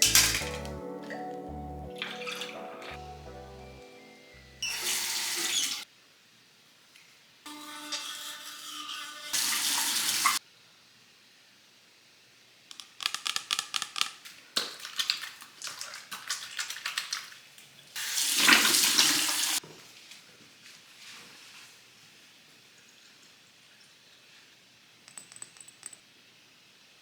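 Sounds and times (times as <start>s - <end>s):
tap water running into sink: 8.7s - 10.4s, 18.0s - 19.6s.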